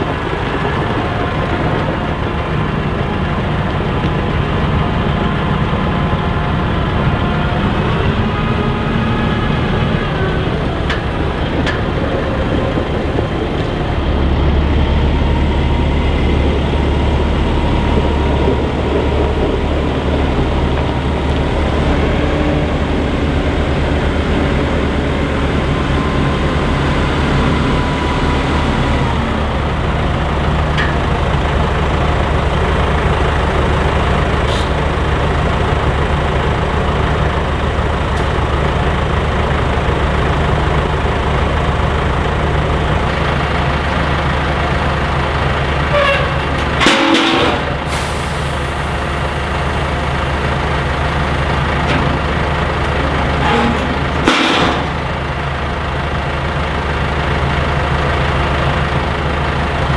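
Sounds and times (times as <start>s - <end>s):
heavy diesel engine running: 0.0s - 59.9s.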